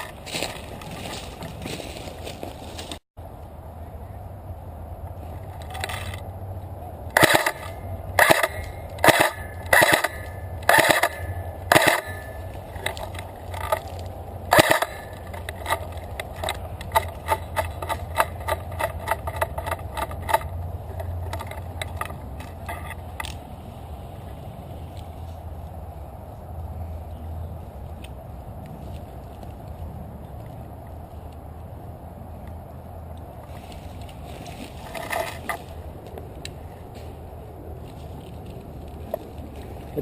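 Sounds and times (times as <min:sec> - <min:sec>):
footsteps crunching on forest floor: 0:00.0 - 0:03.0, 0:33.5 - 0:40.0
wind rumble on microphone: 0:00.0 - 0:40.0.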